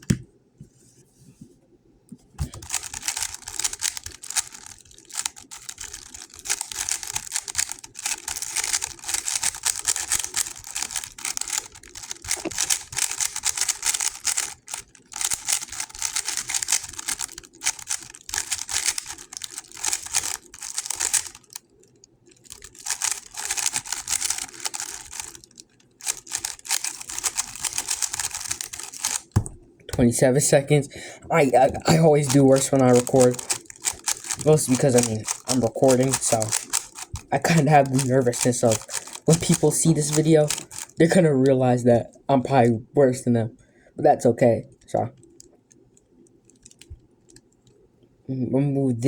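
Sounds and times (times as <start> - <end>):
puzzle cube clicking turns: 2.4 - 30.1, 31.4 - 41.2, 46.5 - 47.8.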